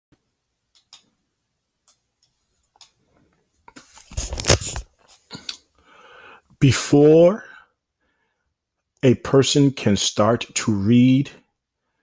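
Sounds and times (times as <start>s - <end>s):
rustling: 3.8s - 5.3s.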